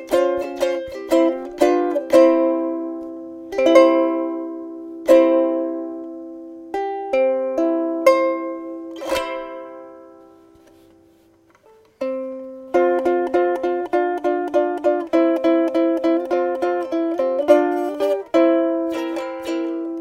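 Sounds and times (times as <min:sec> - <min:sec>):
ukulele strummed in chords: 0:00.0 - 0:20.0.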